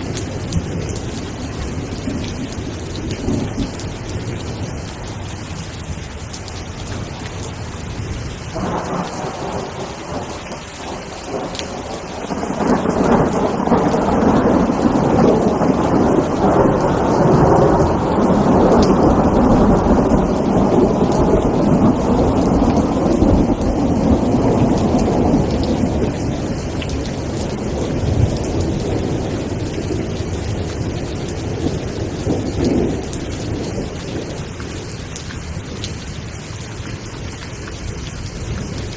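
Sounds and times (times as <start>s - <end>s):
steady rain: 0.0s - 38.9s
rolling thunder: 8.0s - 35.0s.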